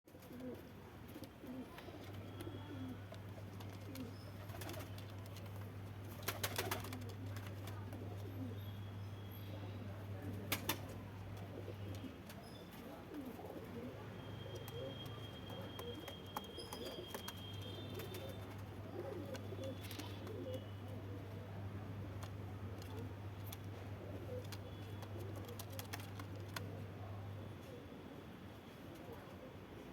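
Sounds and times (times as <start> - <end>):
pigeons cooing: 11.4 - 21.5.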